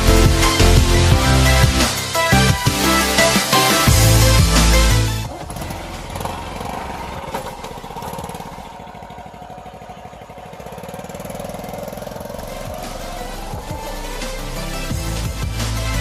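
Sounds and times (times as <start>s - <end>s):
small engine running: 0.0s - 16.0s.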